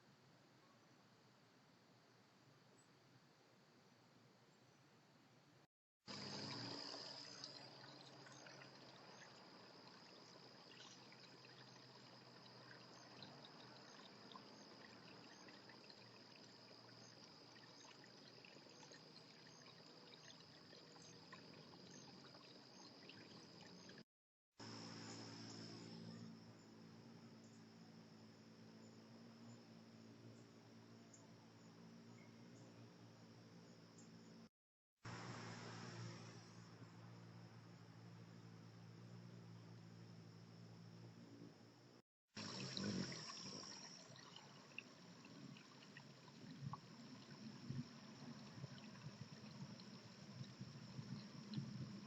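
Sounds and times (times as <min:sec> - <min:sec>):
crickets trilling: 0:06.1 - 0:24.0, 0:24.6 - 0:34.4, 0:35.1 - 0:52.0
soft hiss: 0:35.1 - 0:41.5.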